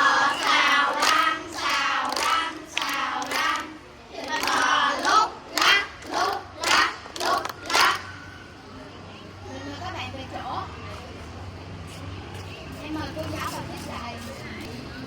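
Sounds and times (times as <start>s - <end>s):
children singing together: 0.0s - 3.7s
hand claps: 0.3s - 8.1s.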